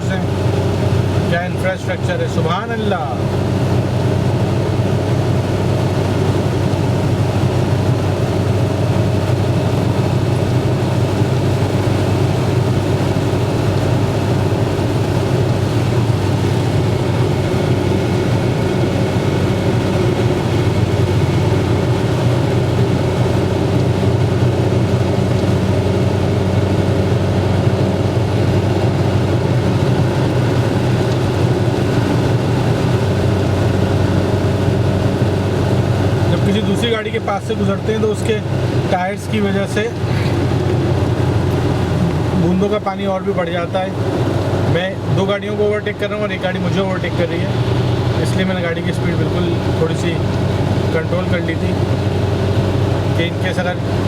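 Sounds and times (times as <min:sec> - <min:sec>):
engine and tyre drone: 0:00.0 - 0:54.0.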